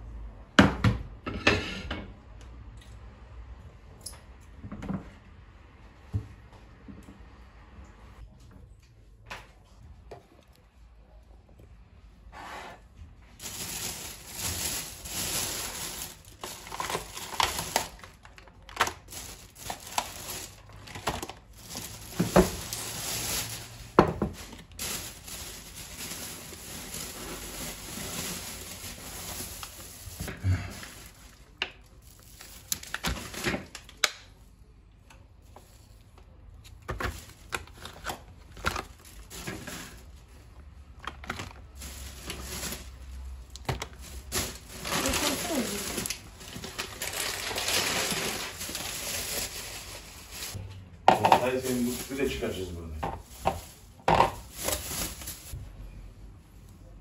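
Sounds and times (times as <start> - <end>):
plastic packaging crinkling: 13.4 - 34.1, 36.9 - 50.6, 51.4 - 55.6
dishes knocking and clinking: 51.1 - 51.4.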